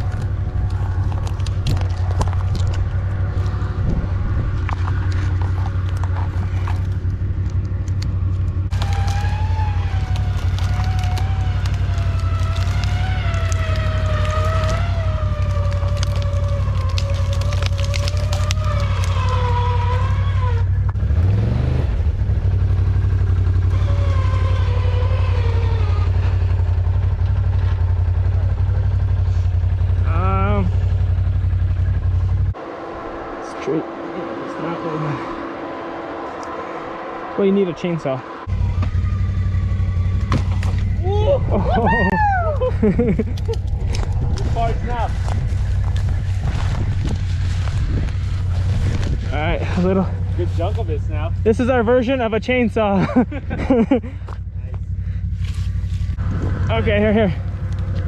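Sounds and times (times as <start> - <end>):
atv engine idling: 0.0 - 21.0, 22.0 - 33.2, 38.4 - 58.0
wavering whine: 30.4 - 52.3.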